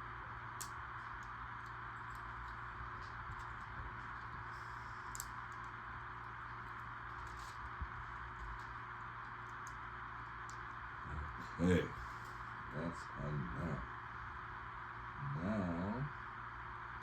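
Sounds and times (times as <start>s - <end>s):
plastic pieces clicking: 5.1s - 5.7s.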